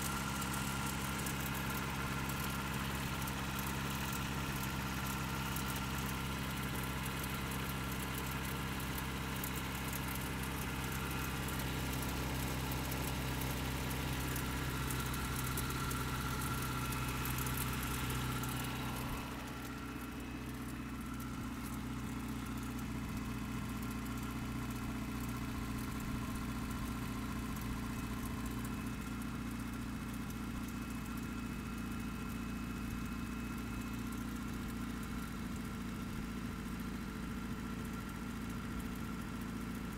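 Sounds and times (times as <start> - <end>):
car engine idling: 0.0 - 39.9
engine knocking: 0.0 - 39.9.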